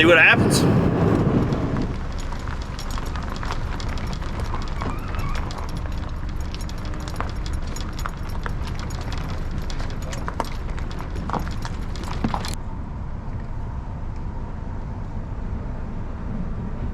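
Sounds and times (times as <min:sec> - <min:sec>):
road rumble inside vehicle: 0:00.0 - 0:16.9
small rattles and clicks: 0:01.4 - 0:12.6.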